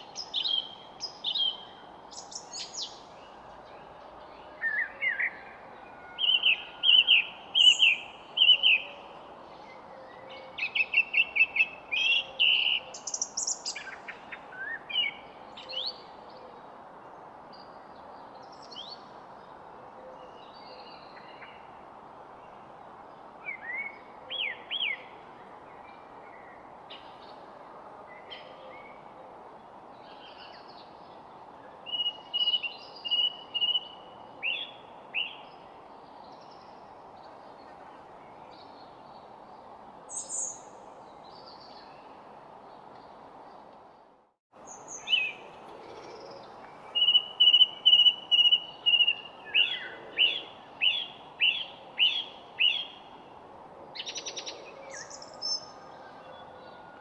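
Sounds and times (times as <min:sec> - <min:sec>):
background hiss: 0:00.0 - 0:04.4, 0:05.3 - 0:09.8, 0:10.6 - 0:27.9, 0:29.0 - 0:44.0, 0:44.6 - 0:55.9
songbirds singing: 0:00.0 - 0:16.4, 0:29.7 - 0:53.4, 0:54.0 - 0:57.0.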